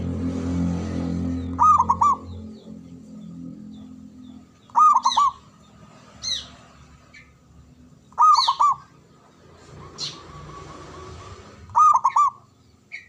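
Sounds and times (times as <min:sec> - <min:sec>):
dove cooing: 0:01.5 - 0:02.8, 0:04.6 - 0:05.5, 0:08.2 - 0:08.9, 0:10.0 - 0:12.5.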